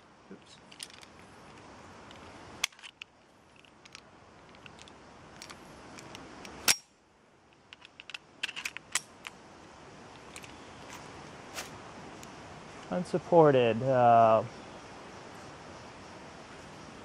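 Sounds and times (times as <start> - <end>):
pistol metallic clicks and clacks: 7.7 - 9.4.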